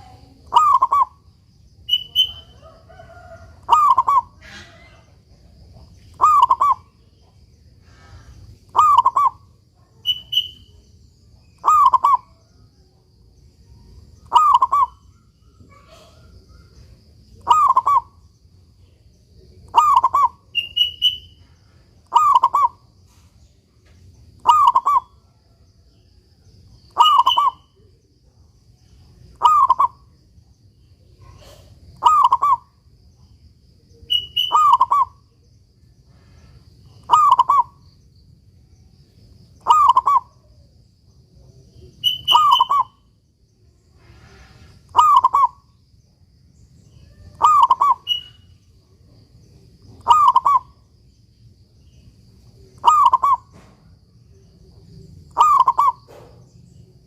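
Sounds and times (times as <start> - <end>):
dove cooing: 0.0 - 1.2, 1.9 - 5.2, 6.1 - 6.9, 8.7 - 9.4, 11.6 - 12.4, 14.3 - 15.0, 17.4 - 18.1, 19.7 - 20.4, 22.1 - 22.8, 24.4 - 25.2, 29.4 - 30.0, 31.3 - 32.7, 34.4 - 35.2, 37.0 - 37.8, 39.6 - 40.3, 44.9 - 45.6, 47.3 - 48.3, 49.9 - 50.7, 52.8 - 53.7, 55.3 - 56.3.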